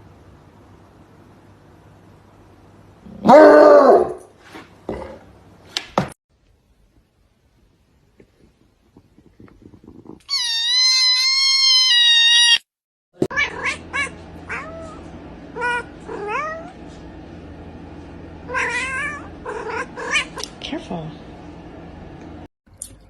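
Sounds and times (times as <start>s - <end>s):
cat meowing: 10.2s - 12.6s, 13.3s - 15.0s
cat yowling: 10.2s - 12.7s, 13.3s - 15.0s, 15.6s - 16.7s, 18.5s - 20.4s.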